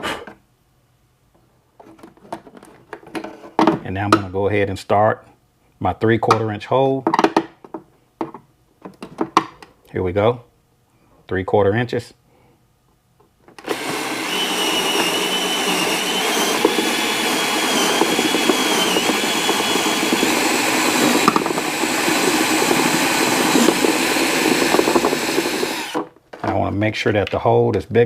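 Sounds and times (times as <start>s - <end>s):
power drill boring through metal: 13.6s - 26.1s.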